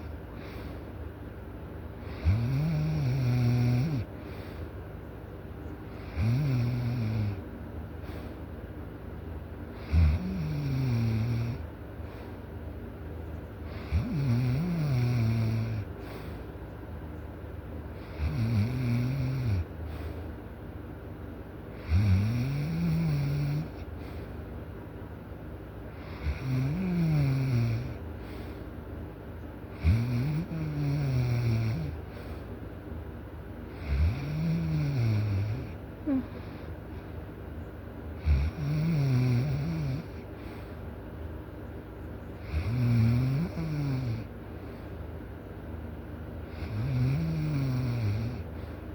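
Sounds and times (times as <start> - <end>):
loud snoring: 2.0 - 4.1, 6.0 - 7.4, 9.8 - 11.7, 13.7 - 15.9, 18.0 - 19.7, 21.8 - 23.9, 26.0 - 28.0, 29.8 - 32.3, 33.7 - 36.6, 38.2 - 40.3, 42.4 - 44.3, 46.5 - 48.5.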